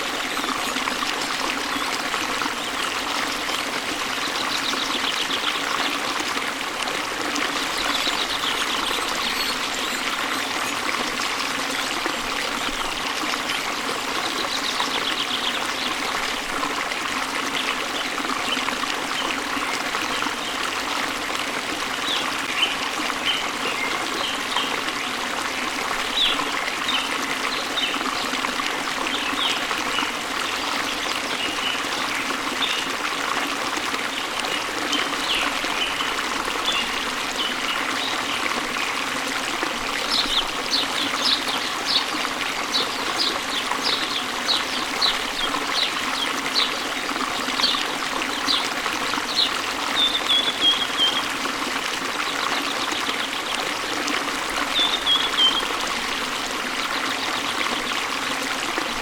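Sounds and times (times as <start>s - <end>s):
waterfall and stream running: 0.0s - 59.0s
birds chirping: 7.6s - 10.8s, 47.4s - 51.3s, 54.7s - 55.7s.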